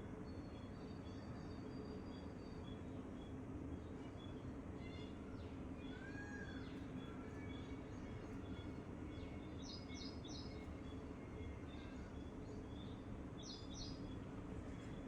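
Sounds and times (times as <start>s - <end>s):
birds chirping: 11.7s - 15.0s.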